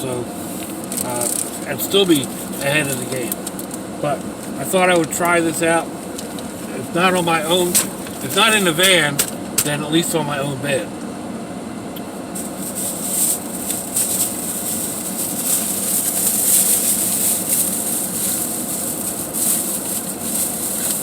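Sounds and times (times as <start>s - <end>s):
steady low hum: 0.0s - 21.0s
plastic packaging rustling: 0.6s - 3.8s, 12.4s - 21.0s.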